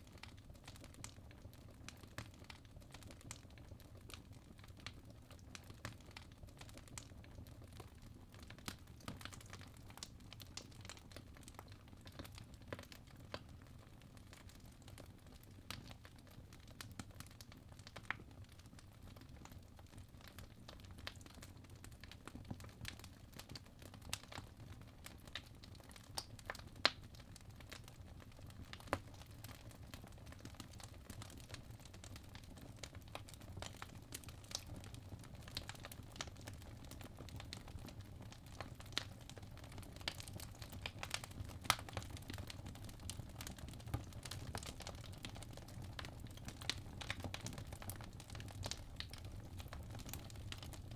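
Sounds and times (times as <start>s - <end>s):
fire crackling and popping: 0.1s - 50.9s
low rumble of burning: 14.3s - 50.9s.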